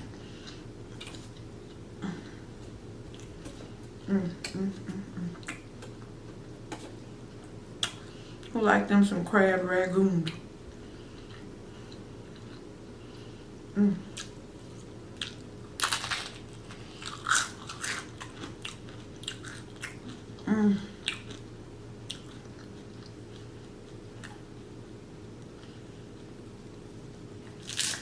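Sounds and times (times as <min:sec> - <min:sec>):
crispy food crunching: 0:00.4 - 0:03.8, 0:14.2 - 0:20.4, 0:27.4 - 0:28.0.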